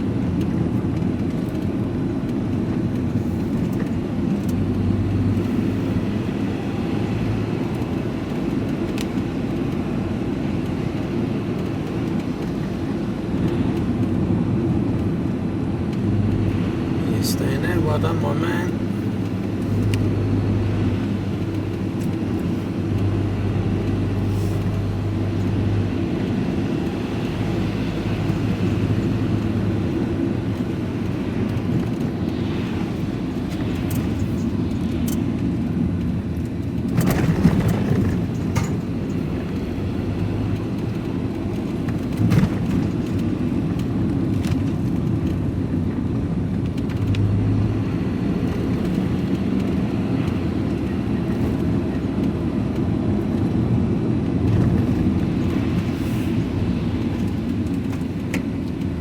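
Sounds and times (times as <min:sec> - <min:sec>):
road noise: 0:00.0 - 0:59.0
vehicle engine drone: 0:00.0 - 0:59.0.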